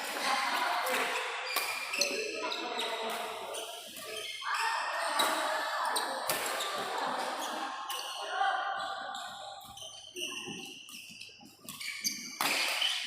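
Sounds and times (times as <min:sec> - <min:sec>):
spectators' voices: 0:00.0 - 0:09.7
racket hitting shuttlecock: 0:06.2 - 0:06.9, 0:12.1 - 0:13.0.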